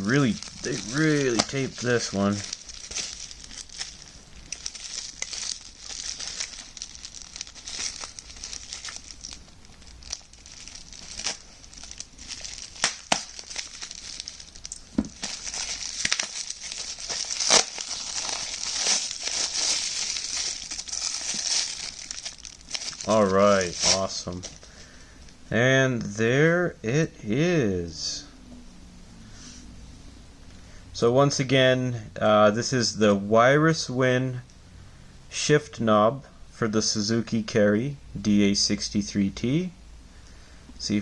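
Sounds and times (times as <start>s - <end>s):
packing tape pulled and torn: 0.0s - 9.4s, 10.1s - 24.7s
plastic wrapping crinkling: 0.0s - 25.0s.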